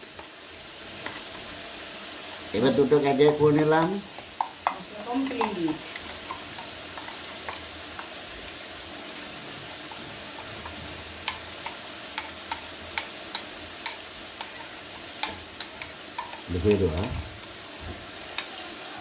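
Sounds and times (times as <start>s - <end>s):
chicken sizzling in hot oil: 0.0s - 19.0s
oil popping: 3.4s - 8.5s.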